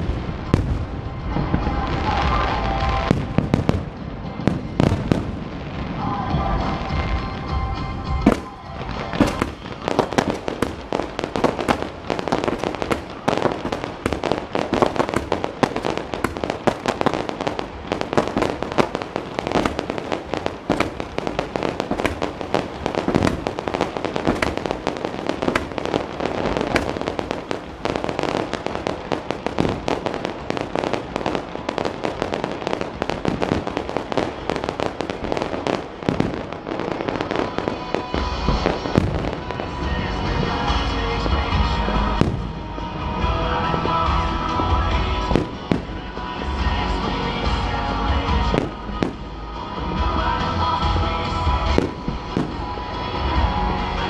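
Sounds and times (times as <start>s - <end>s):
fireworks crackling and popping: 0.0s - 54.0s
loud firework bang: 8.2s - 31.1s, 34.8s - 39.5s.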